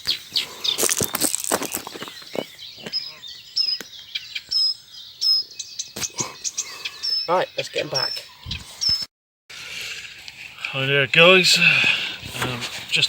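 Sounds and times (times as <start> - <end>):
small birds chirping: 0.0 - 9.1
rustling: 11.8 - 13.0.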